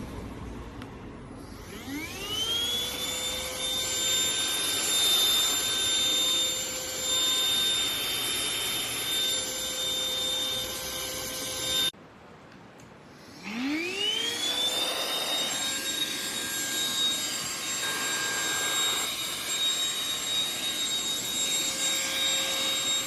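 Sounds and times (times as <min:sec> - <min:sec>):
handheld vacuum cleaner whining: 0:01.4 - 0:12.0, 0:13.2 - 0:23.0.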